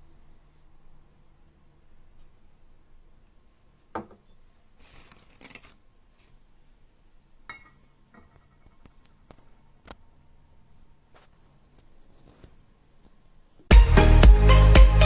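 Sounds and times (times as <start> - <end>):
rustling: 4.8 - 6.4.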